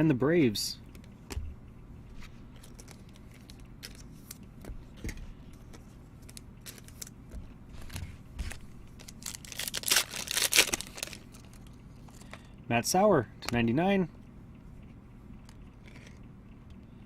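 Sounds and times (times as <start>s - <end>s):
packaging crinkling and tearing: 2.6s - 4.4s, 5.7s - 7.2s, 7.8s - 12.2s.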